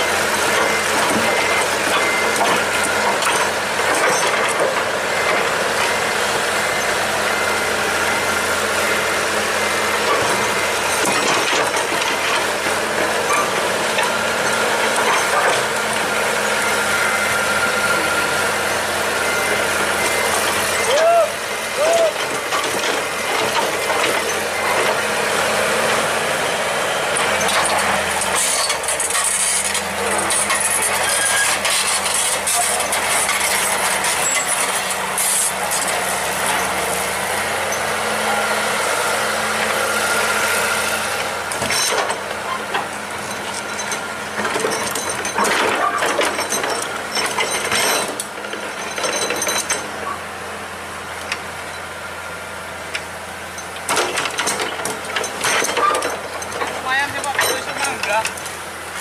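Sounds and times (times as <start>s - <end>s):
excavator diesel engine: 0.0s - 59.0s
metallic clanks and rattles: 10.0s - 16.0s, 41.5s - 50.2s, 53.0s - 58.6s.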